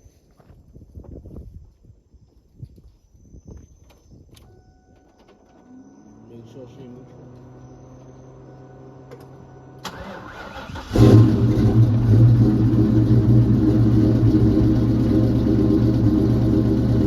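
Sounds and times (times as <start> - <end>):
car engine idling loudly: 10.9 - 17.0.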